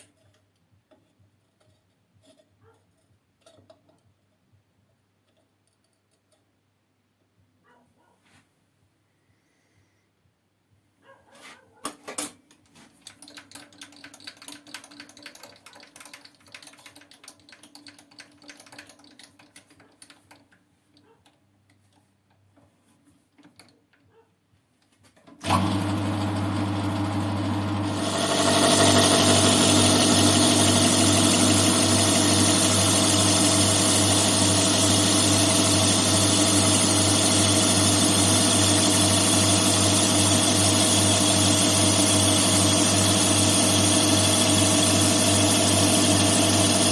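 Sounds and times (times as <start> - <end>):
lathe running with steady hum: 25.4 - 46.9.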